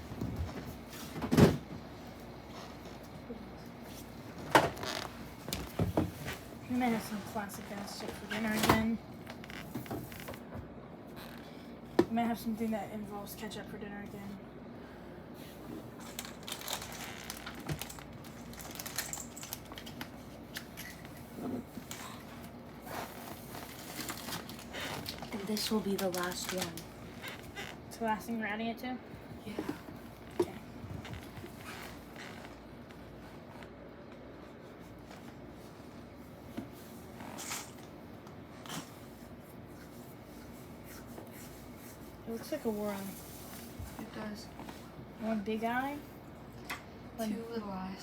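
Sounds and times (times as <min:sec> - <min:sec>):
packaging crinkling: 0:16.0 - 0:21.1, 0:23.0 - 0:27.7.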